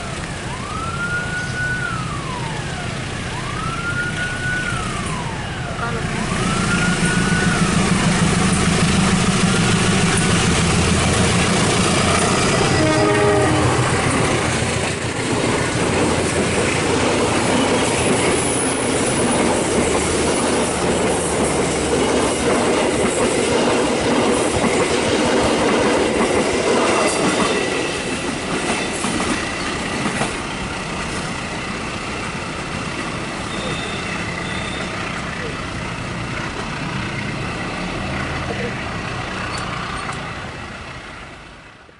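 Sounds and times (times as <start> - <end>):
diesel train engine humming: 0.0 - 41.9
train horn: 5.8 - 8.2, 12.2 - 14.7.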